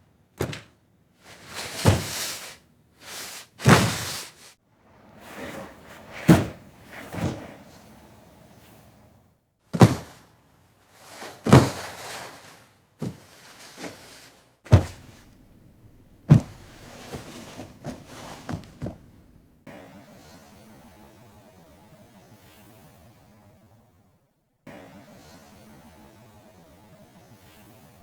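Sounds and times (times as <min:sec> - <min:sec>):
heavy thuds: 0:03.6 - 0:04.3, 0:14.7 - 0:19.6
softer knocks: 0:14.7 - 0:19.5.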